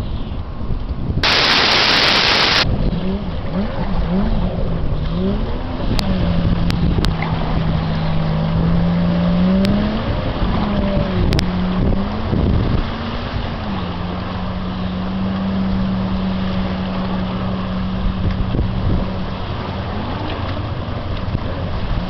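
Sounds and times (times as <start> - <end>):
wind rumble on microphone: 0.0 - 22.0
loud burst of hiss: 1.2 - 2.6
engine running: 1.2 - 12.7.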